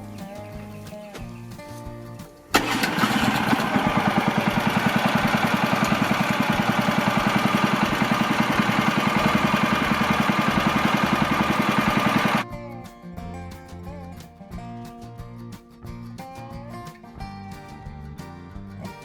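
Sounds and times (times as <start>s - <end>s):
sawmill engine running: 2.5s - 12.4s.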